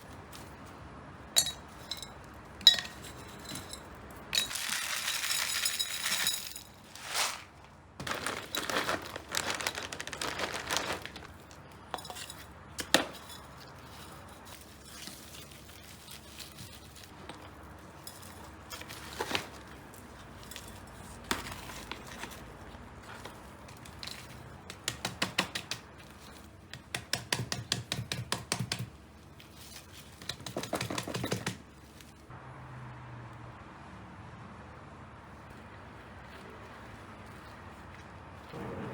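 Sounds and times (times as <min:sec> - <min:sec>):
plant pot clinks and scraping: 0:01.3 - 0:04.7, 0:11.4 - 0:15.6.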